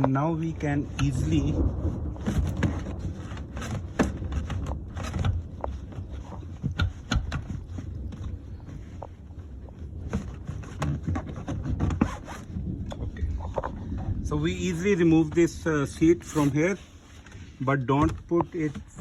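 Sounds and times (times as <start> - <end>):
upholstery and plastic scraping: 0.0 - 19.0
irregular clicks and knocks: 2.2 - 14.2.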